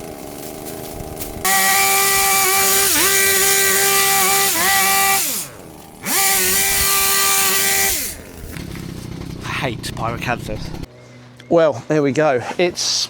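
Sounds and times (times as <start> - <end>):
hedge trimmer running: 0.0 - 10.9
motor winding down: 1.1 - 10.9.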